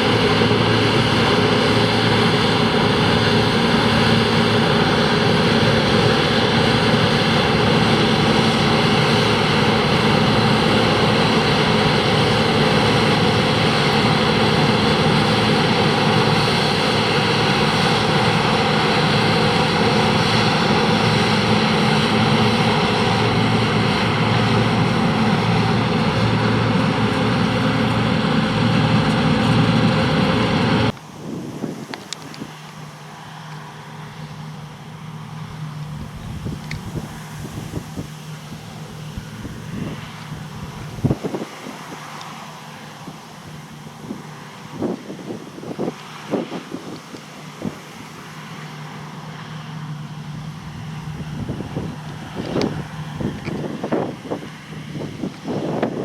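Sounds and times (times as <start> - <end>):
combine harvester running: 0.0 - 56.0.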